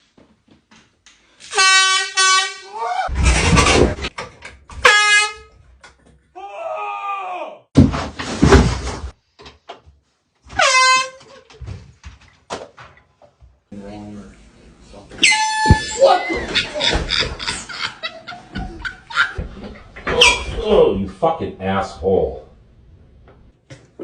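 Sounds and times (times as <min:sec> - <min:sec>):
air horn honks: 0:01.5 - 0:02.8, 0:04.8 - 0:05.5, 0:10.6 - 0:11.3
people yelling: 0:02.6 - 0:03.1, 0:06.4 - 0:07.7, 0:15.8 - 0:16.9.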